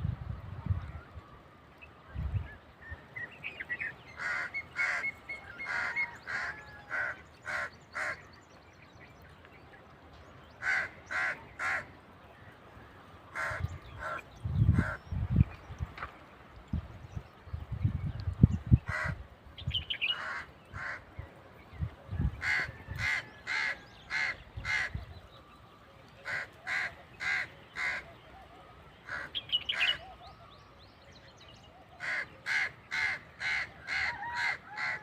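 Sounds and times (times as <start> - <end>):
songbird chirps: 0.9 - 34.3
crow cawing: 4.2 - 5.0, 5.6 - 8.2, 10.6 - 11.9, 13.3 - 14.2, 18.9 - 19.2, 20.2 - 21.0, 26.2 - 28.1, 29.0 - 29.9, 32.0 - 35.0.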